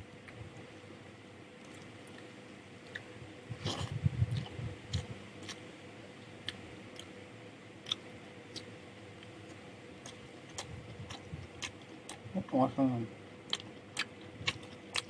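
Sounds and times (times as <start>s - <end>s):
quiet chewing: 1.6s - 5.6s, 7.8s - 12.4s, 13.4s - 15.0s.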